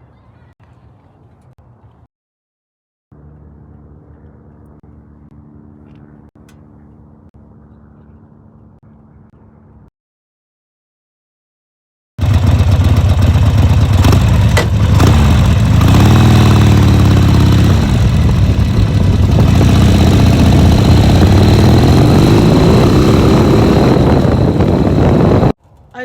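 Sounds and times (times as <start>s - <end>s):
motorcycle engine revving: 12.2s - 25.6s.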